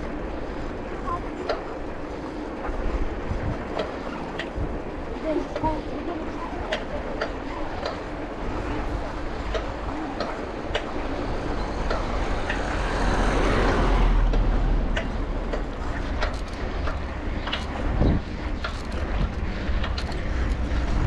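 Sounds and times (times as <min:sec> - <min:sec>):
wind and rolling tyres rumble: 0:00.0 - 0:21.0
bicycle rattling: 0:14.2 - 0:21.0.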